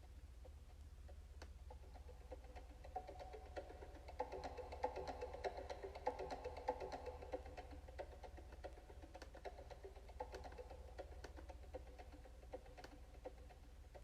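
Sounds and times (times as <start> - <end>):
low electrical hum: 0.0 - 14.0
wood-block-like percussive music: 0.0 - 14.0.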